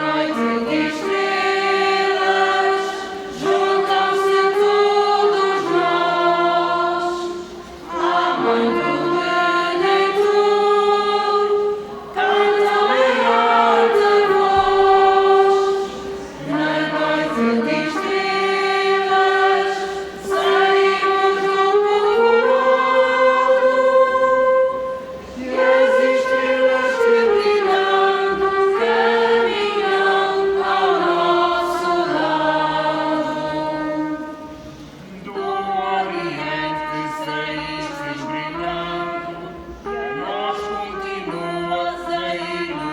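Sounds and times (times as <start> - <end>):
vocal group singing in chorus: 0.0 - 42.9.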